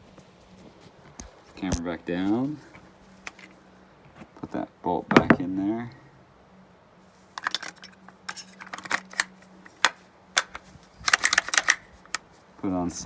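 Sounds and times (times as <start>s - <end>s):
metallic clicks of pistol bolt: 8.6s - 12.2s.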